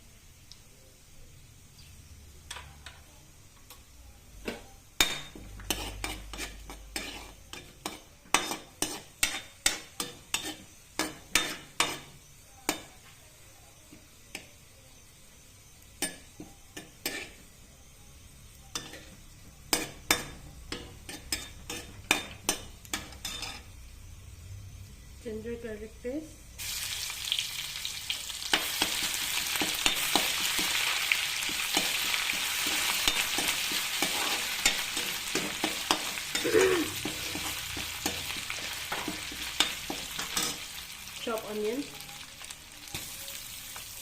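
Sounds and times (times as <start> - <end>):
oil sizzling: 0.0 - 44.0
spoon scraping frying pan: 4.5 - 12.9, 16.0 - 17.5, 18.7 - 23.7, 28.4 - 40.9.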